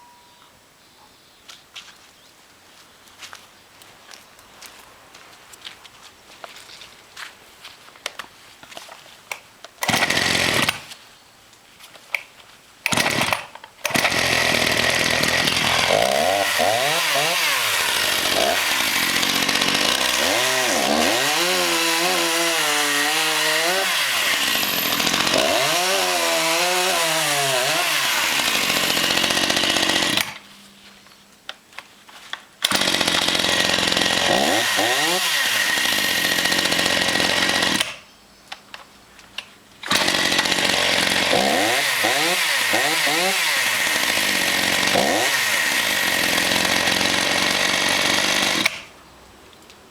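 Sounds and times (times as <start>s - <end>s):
chainsaw at high revs: 9.8s - 10.9s, 12.9s - 30.4s, 32.6s - 38.0s, 39.8s - 48.9s.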